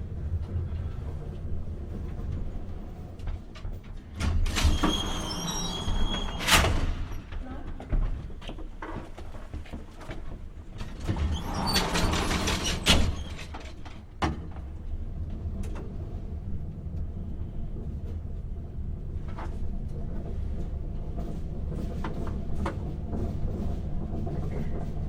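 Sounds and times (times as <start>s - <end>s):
elevator car humming: 0.0s - 25.0s
elevator door clattering shut: 4.1s - 7.4s.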